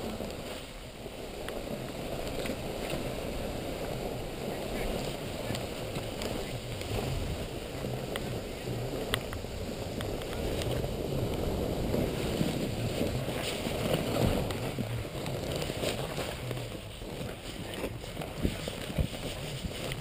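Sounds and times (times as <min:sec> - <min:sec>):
skis scraping over snow: 0:00.0 - 0:20.0
wind on microphone: 0:00.0 - 0:20.0
faint clicks: 0:08.0 - 0:20.0.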